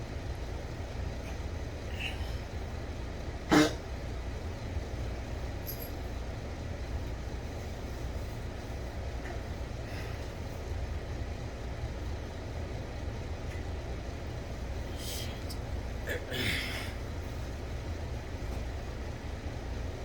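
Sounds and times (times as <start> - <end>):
low rumbling background noise: 0.0 - 20.0.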